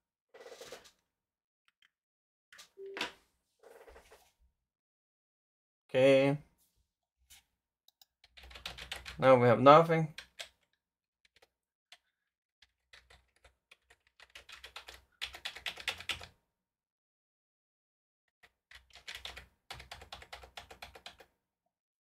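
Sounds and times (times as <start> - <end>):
typing on a computer keyboard: 8.2 - 9.2, 10.2 - 10.7, 12.6 - 16.3, 18.4 - 21.3.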